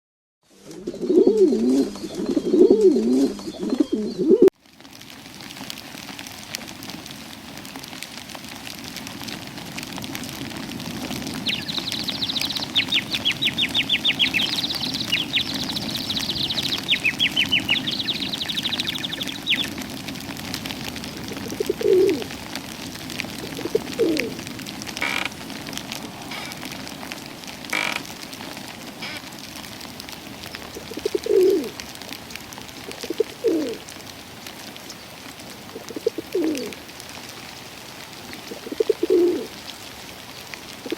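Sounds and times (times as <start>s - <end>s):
pigeon cooing: 0.6s - 4.5s, 11.4s - 19.8s, 21.2s - 22.3s, 23.4s - 24.4s, 30.8s - 31.8s, 32.9s - 33.8s, 35.8s - 36.8s, 38.5s - 39.6s
songbird trilling: 11.4s - 19.8s.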